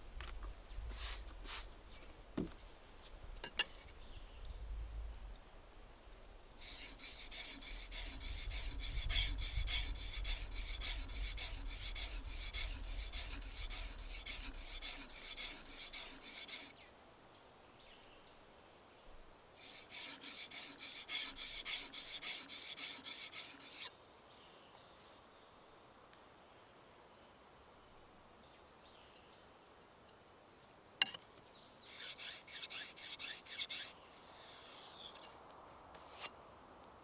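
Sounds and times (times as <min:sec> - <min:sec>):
hand tool rasping wood: 0:06.6 - 0:16.7, 0:19.6 - 0:23.9, 0:31.9 - 0:34.0.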